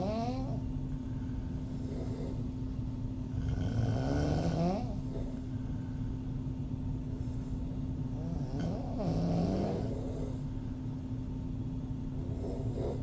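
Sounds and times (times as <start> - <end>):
woman snoring: 0.0 - 0.6, 3.4 - 5.3, 8.2 - 10.3
steady low hum: 0.0 - 13.0.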